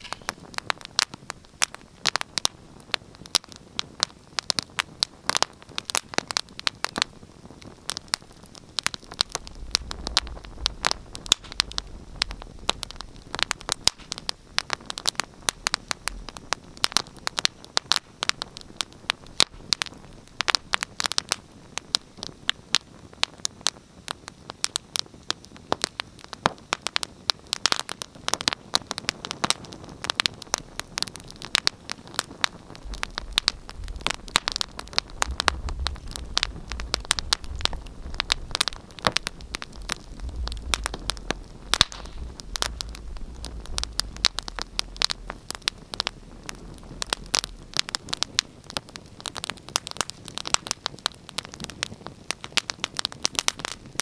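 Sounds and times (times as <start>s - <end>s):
wood fire crackling and popping: 0.0s - 54.0s
low rumble: 9.2s - 13.3s, 32.7s - 48.0s.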